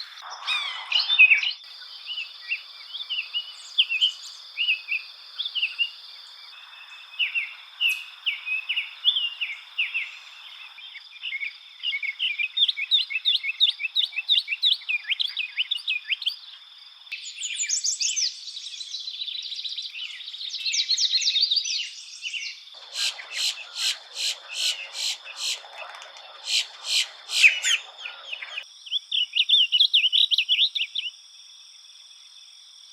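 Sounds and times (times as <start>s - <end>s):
sharp bird calls: 0.0s - 6.0s, 22.4s - 29.8s
songbirds chirping and trilling: 0.0s - 31.2s.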